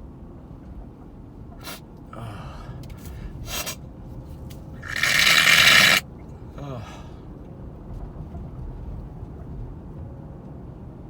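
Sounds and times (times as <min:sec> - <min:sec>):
person gasping breaths: 0:02.1 - 0:03.4, 0:06.6 - 0:07.2.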